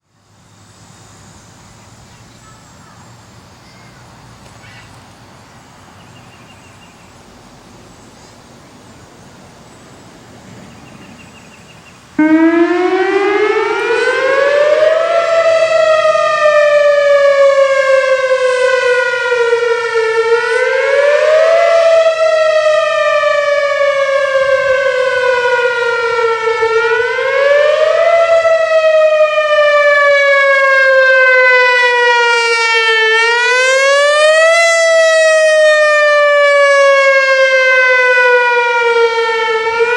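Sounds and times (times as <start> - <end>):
warning siren wailing: 12.2 - 39.9.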